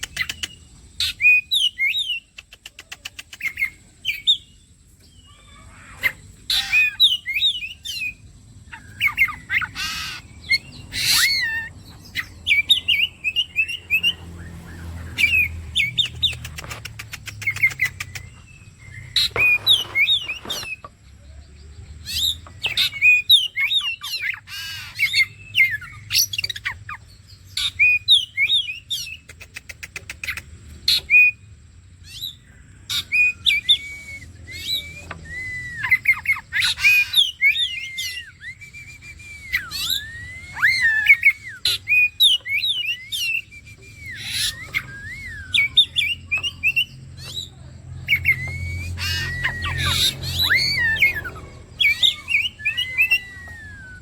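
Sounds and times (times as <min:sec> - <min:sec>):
bird singing whistled phrases: 0:05.2 - 0:16.4, 0:22.1 - 0:27.0, 0:32.1 - 0:54.0.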